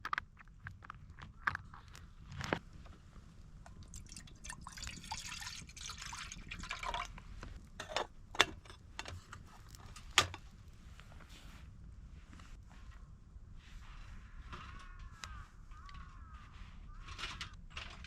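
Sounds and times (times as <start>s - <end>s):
water pouring into a cup: 3.8s - 7.2s.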